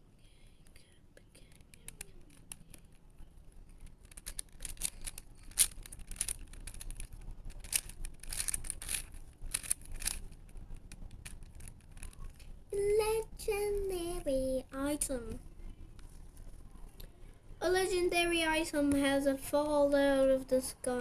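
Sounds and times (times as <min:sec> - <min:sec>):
puzzle cube clicking: 0:01.4 - 0:03.0, 0:03.6 - 0:12.5.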